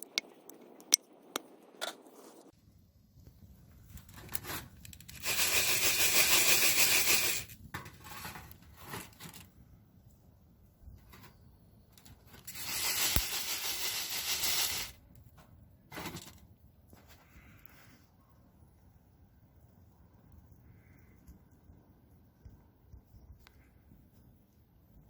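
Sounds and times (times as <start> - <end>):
rough scraping tearing noise: 12.1 - 15.0.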